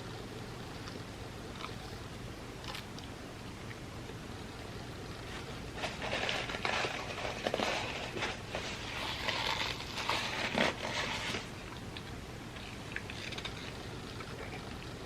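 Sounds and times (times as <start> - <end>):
chewing food: 0.7 - 2.0, 5.4 - 15.0
wet crackly mouth sounds: 0.7 - 2.0, 11.4 - 15.0.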